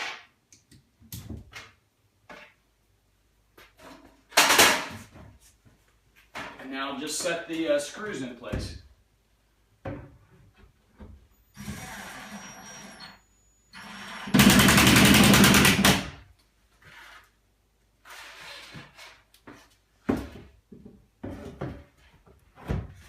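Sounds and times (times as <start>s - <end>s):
power drill driving screws: 11.6s - 14.9s.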